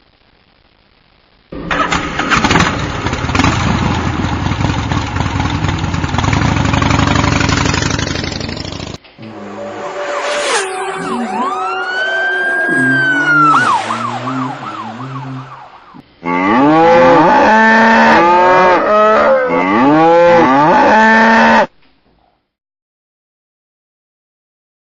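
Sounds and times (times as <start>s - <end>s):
gliding warbling tones: 9.2s - 16.0s
siren-like wail: 9.2s - 16.0s.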